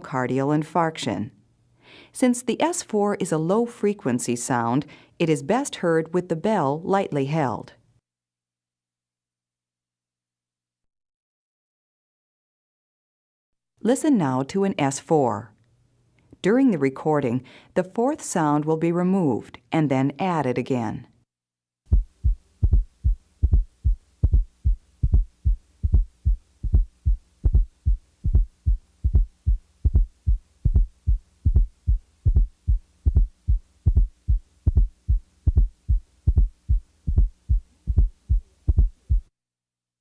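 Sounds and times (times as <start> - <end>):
faint steady hum: 21.9 - 39.3
heartbeat thuds: 21.9 - 39.3.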